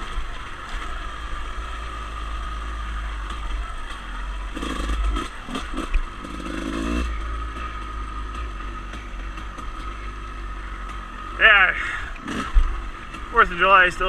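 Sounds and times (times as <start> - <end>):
dirt bike engine running: 0.0 - 14.0
rattling over rough ground: 0.0 - 14.0.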